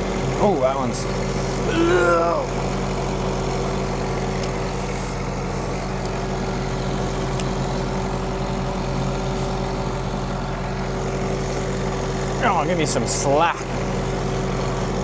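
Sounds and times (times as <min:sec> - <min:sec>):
constant whine: 0:00.0 - 0:15.0
tractor engine running: 0:00.0 - 0:15.0.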